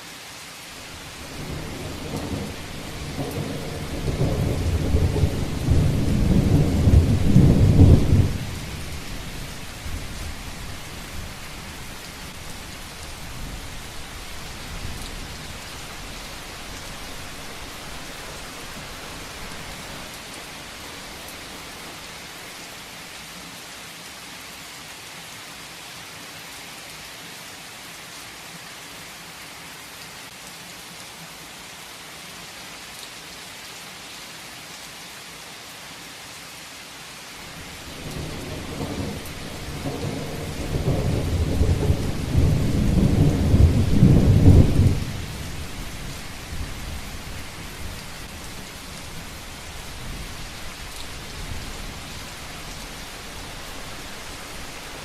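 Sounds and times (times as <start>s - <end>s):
heavy rain: 0.0s - 55.0s
thunder rumble: 1.0s - 11.4s, 37.5s - 55.0s.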